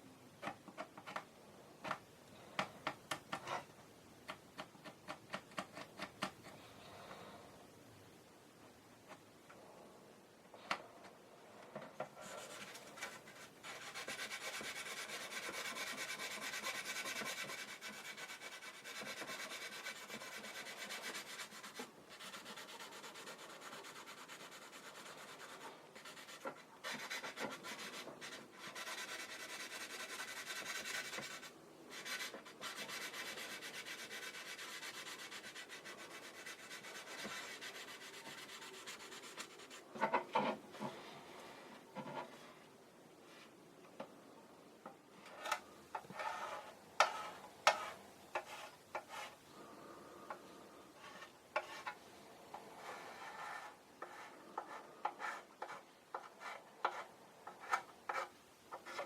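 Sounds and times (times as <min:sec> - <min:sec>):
sanding plastic: 0:12.2 - 0:39.9.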